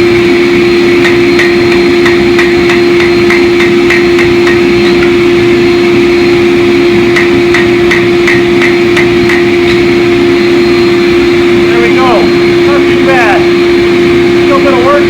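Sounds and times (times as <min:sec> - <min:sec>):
loud steady hum: 0:00.0 - 0:15.0
hammer striking steel on anvil: 0:01.0 - 0:05.3, 0:07.1 - 0:09.9.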